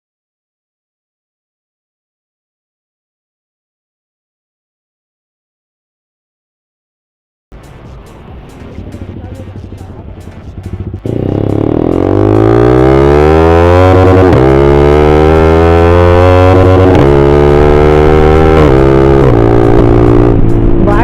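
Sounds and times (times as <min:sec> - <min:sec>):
motorcycle accelerating hard: 0:10.4 - 0:21.0.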